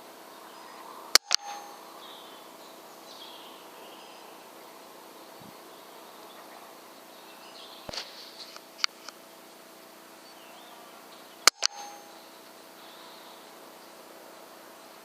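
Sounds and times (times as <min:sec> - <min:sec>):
faint high chirps: 0:00.0 - 0:08.6, 0:10.2 - 0:14.1
air rifle shot: 0:01.2 - 0:01.8, 0:07.9 - 0:08.4, 0:11.5 - 0:12.1.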